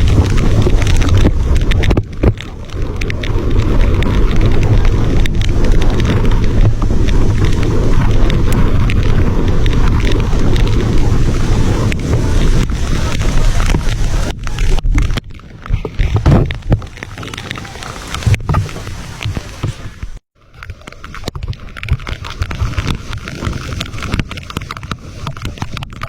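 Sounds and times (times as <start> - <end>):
wind buffeting microphone: 0.0 - 20.2.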